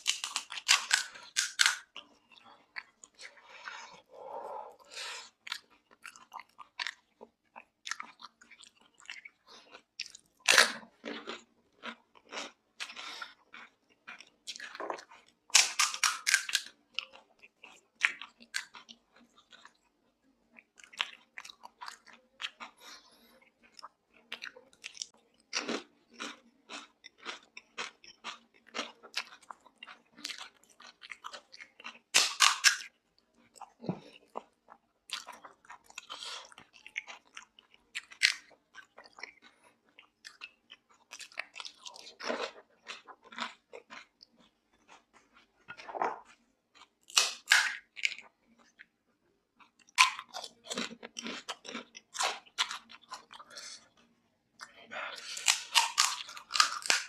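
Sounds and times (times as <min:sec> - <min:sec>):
crisp shells crunching: 0:00.0 - 0:01.9
wet chewing: 0:49.6 - 0:57.0.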